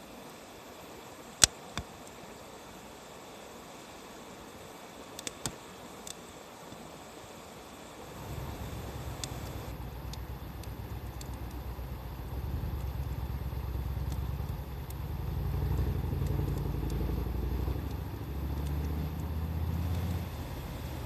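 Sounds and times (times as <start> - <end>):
wood fire crackling and popping: 5.2 - 6.2, 8.0 - 21.0.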